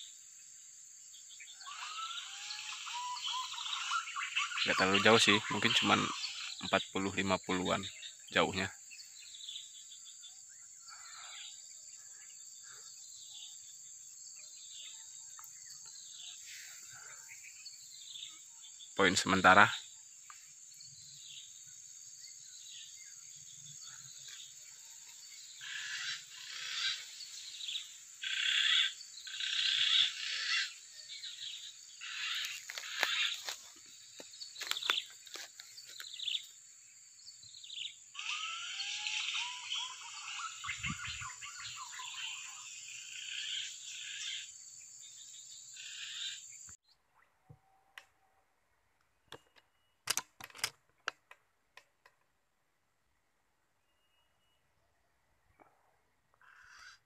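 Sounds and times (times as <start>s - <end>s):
birds chirping: 0.0s - 46.9s
high-pitched insect drone: 24.0s - 36.5s, 38.2s - 46.7s.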